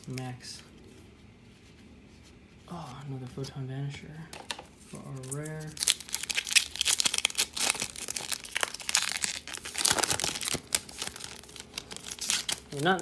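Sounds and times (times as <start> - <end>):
foil wrapper crinkling: 5.1 - 13.0.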